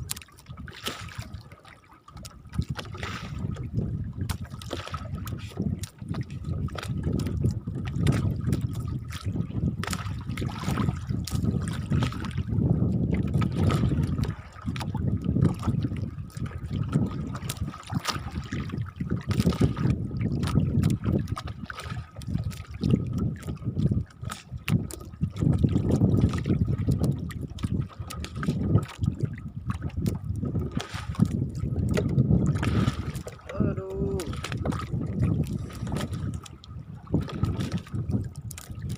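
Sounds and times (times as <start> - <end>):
water lapping against boat hull: 0.0 - 38.9.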